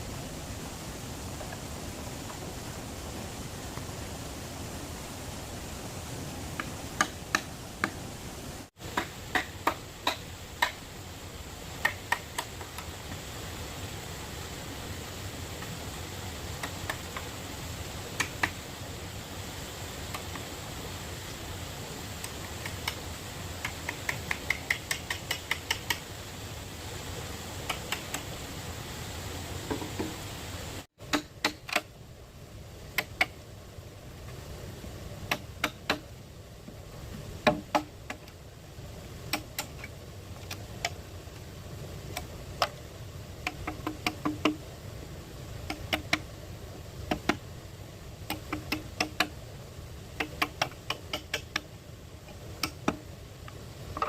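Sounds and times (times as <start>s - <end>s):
sharp taps and clicks: 11.8s - 12.9s, 23.6s - 26.0s, 47.1s - 47.4s, 48.3s - 49.4s, 50.2s - 51.7s.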